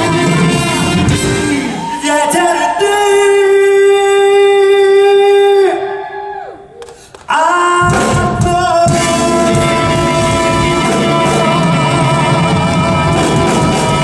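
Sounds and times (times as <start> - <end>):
live pop band chord: 0.0 - 2.0, 7.8 - 14.0.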